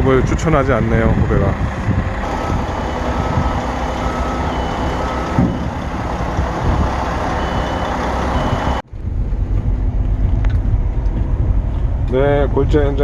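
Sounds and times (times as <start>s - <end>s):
diesel truck engine running: 0.0s - 13.0s
truck reversing alarm beeping: 2.2s - 8.8s.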